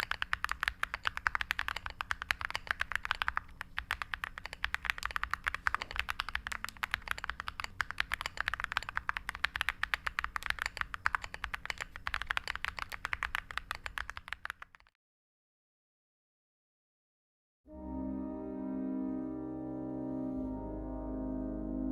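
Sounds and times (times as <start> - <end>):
fast typing on mechanical keyboard: 0.0 - 14.9.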